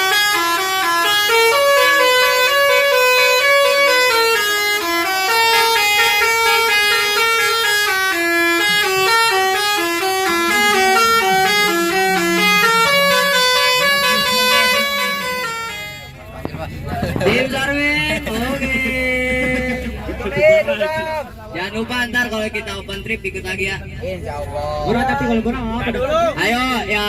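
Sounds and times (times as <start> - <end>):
bus melody horn: 0.0 - 16.5, 17.4 - 21.0.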